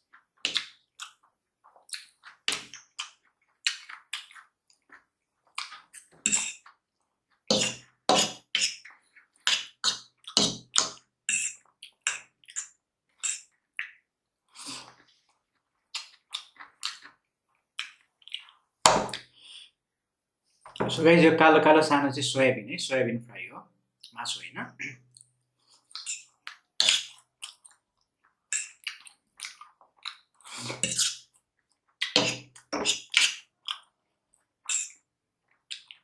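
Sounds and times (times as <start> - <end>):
close chewing sounds: 14.6 - 18.6, 25.1 - 36.0.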